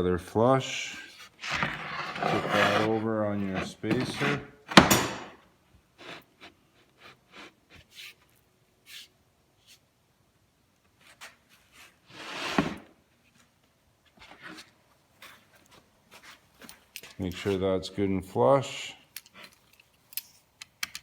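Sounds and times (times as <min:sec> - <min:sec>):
loud scrape or bump: 0:01.4 - 0:05.4
cabinet panels tapping and knocking: 0:03.9 - 0:05.4.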